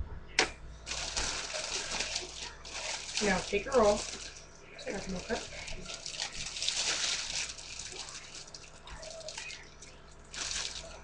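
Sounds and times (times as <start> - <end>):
bread roll wrapper rustling: 0.8 - 11.0.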